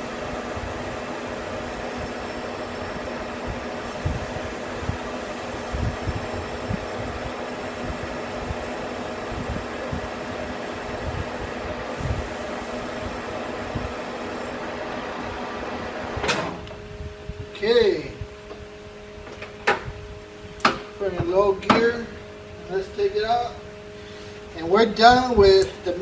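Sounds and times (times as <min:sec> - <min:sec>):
metal lathe humming: 0:00.0 - 0:16.1.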